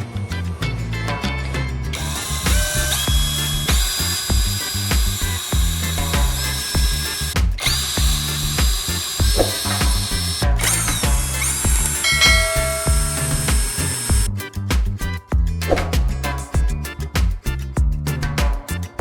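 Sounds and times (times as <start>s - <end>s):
background music with beat: 0.0s - 19.0s
electric motor whining: 1.9s - 14.3s.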